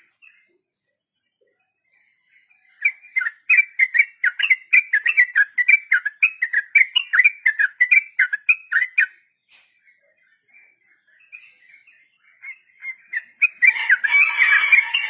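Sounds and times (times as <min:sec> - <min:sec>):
bird singing bubbly whistled song: 0:02.0 - 0:14.0.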